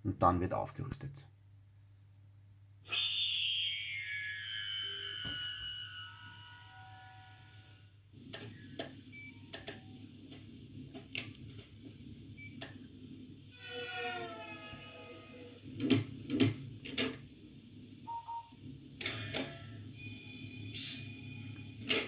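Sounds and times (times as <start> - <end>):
falling electronic tones: 2.9 - 7.7.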